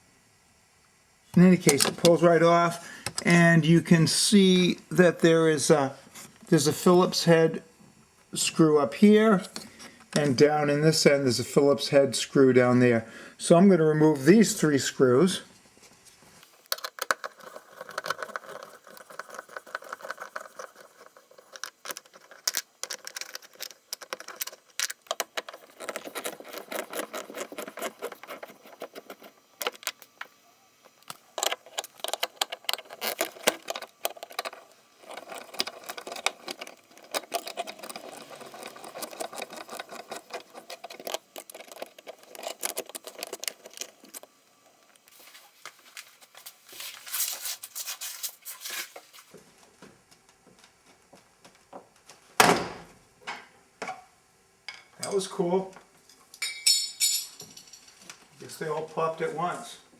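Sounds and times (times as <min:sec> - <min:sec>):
screwdriver clicking and scraping: 0:16.6 - 0:45.1
small plastic rattles: 0:16.7 - 0:45.1.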